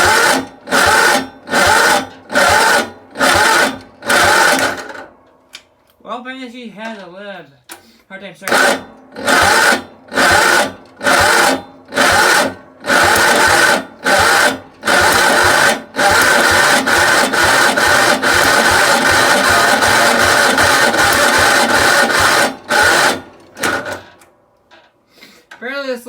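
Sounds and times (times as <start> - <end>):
engine starter cranking: 0.0 - 5.9, 7.7 - 25.0.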